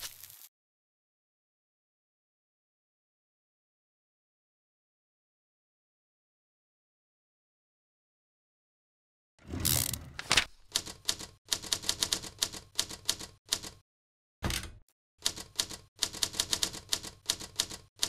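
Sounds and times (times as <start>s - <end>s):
rapid mechanical clicks: 15.2s - 18.0s.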